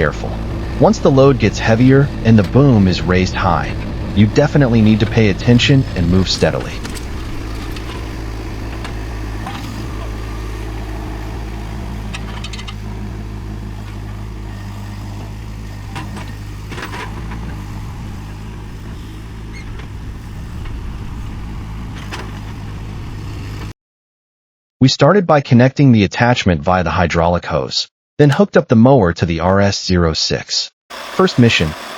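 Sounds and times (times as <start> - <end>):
loader engine running under load: 0.0 - 23.7, 30.9 - 31.9.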